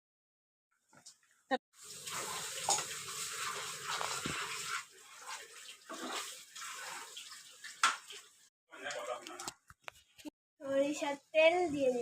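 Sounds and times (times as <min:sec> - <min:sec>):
food sizzling and bubbling in pan: 0:01.8 - 0:08.5.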